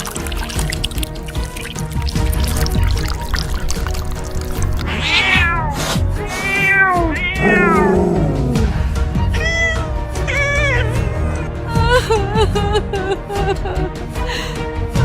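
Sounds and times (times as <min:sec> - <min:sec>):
background music: 0:00.0 - 0:15.0
cat meowing: 0:04.4 - 0:11.5.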